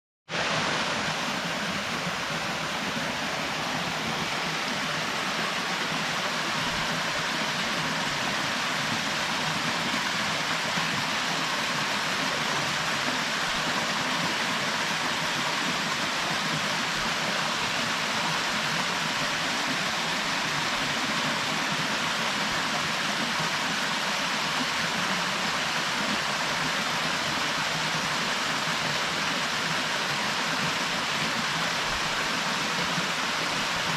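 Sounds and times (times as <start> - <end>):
waterfall rushing: 0.3 - 33.9.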